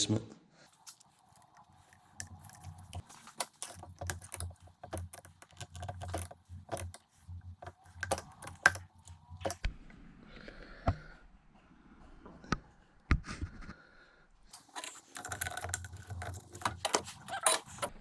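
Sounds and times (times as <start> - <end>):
small parts clicking and tapping: 0.8 - 9.7, 14.5 - 18.0.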